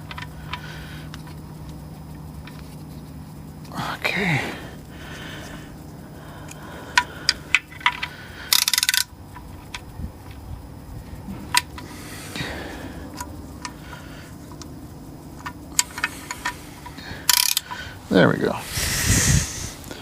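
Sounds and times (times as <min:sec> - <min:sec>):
ratchet wrench clicking: 0:06.4 - 0:09.9, 0:15.4 - 0:17.9.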